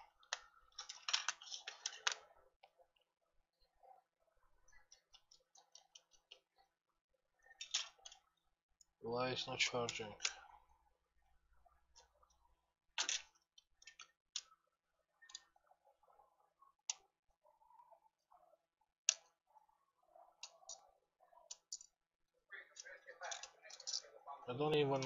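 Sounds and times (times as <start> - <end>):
small tools clicking and tapping: 20.4 - 21.9, 22.8 - 24.1.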